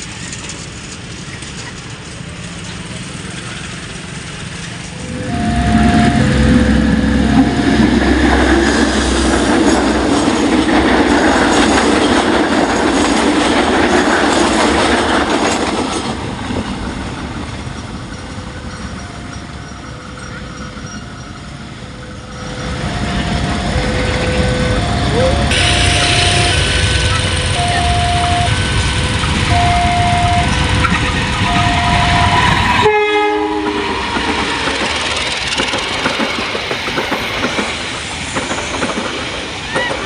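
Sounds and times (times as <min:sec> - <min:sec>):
train passing at speed: 0:00.0 - 0:40.0
two-tone crossing warning alarm: 0:05.0 - 0:09.4, 0:20.8 - 0:34.4.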